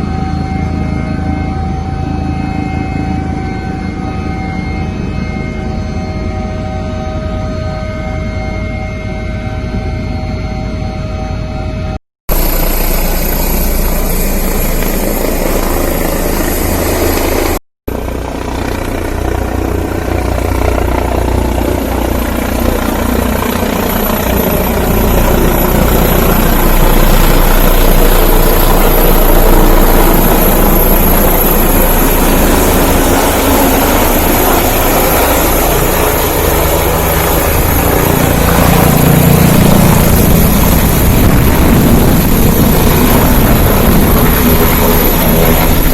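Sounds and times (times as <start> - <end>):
helicopter engine and rotor: 0.0 - 45.9.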